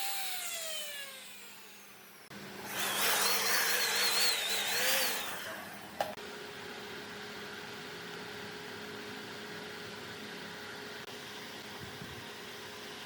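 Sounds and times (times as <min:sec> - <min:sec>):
power tool winding down: 0:00.0 - 0:05.9
power tool running under load: 0:00.0 - 0:07.7.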